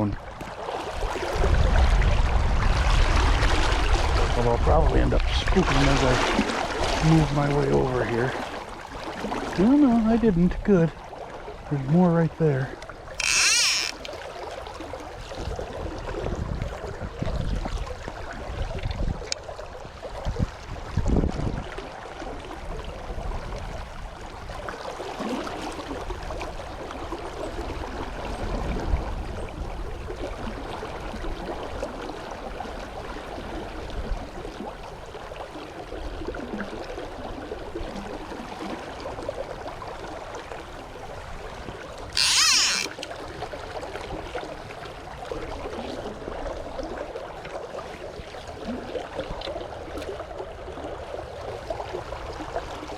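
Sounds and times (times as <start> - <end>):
wind buffeting microphone: 0.0 - 5.9, 15.2 - 21.8
river current running: 11.0 - 17.0, 34.2 - 52.9.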